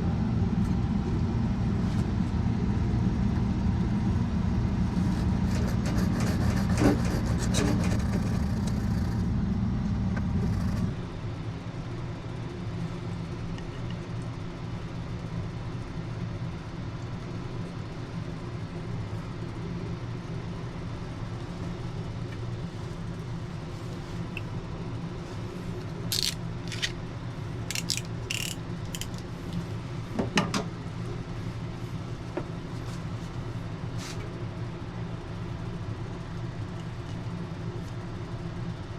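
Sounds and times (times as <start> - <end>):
low mechanical hum: 0.0 - 38.9
small metal clicks and clatters: 26.1 - 27.0, 27.7 - 29.2.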